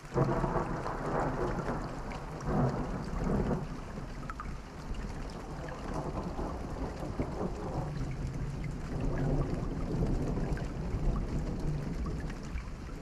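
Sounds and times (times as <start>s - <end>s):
raindrop ticks: 0.0s - 13.0s
steady rain: 0.0s - 13.0s
distant thunder rumble: 0.2s - 13.0s.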